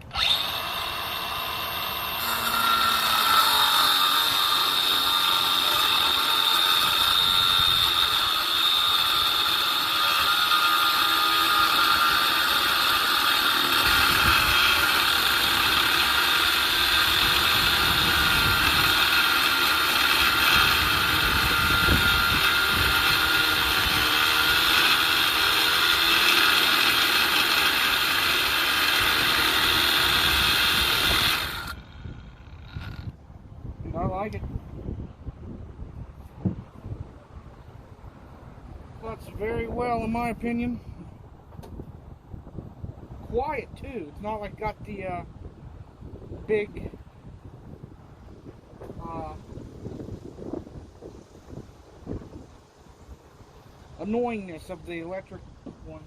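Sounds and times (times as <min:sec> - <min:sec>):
angle grinder whining and cutting: 0:00.0 - 0:33.2.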